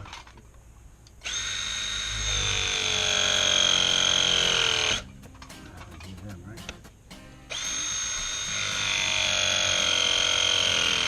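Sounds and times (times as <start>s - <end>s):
press tool motor whine: 1.2s - 5.0s, 7.5s - 11.0s.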